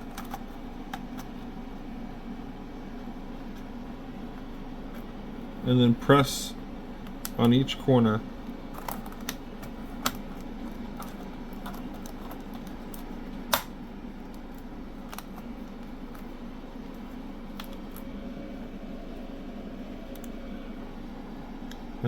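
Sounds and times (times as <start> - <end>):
plastic keyboard clicks: 0.0 - 1.3, 11.0 - 13.7
steady low hum: 0.0 - 22.0.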